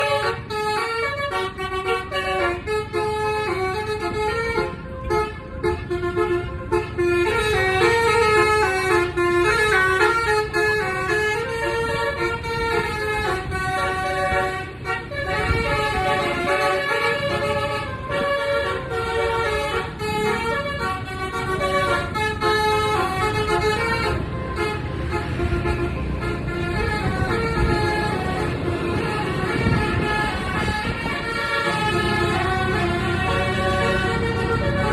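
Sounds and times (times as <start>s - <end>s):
bus engine rumble: 0.0s - 34.9s
bus horn playing a melody: 0.0s - 34.9s.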